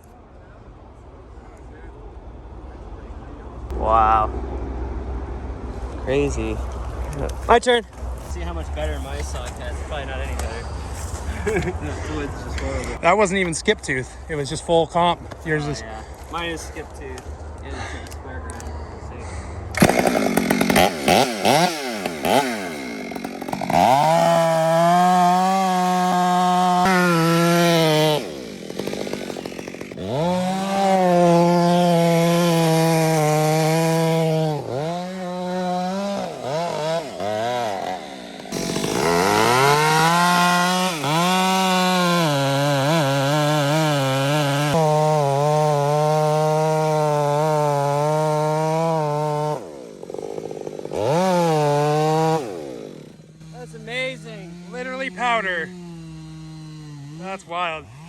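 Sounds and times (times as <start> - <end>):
chainsaw cutting wood: 6.2 - 13.6, 19.7 - 58.0.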